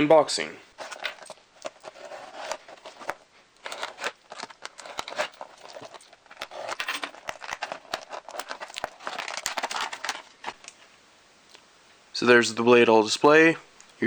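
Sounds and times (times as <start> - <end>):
packaging tearing and crinkling: 0.7 - 10.8.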